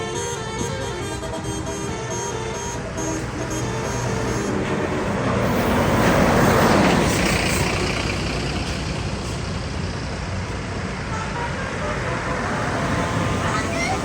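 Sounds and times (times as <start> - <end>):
musical vehicle horn: 0.0 - 5.9, 11.1 - 13.5
bus passing by: 0.0 - 14.0.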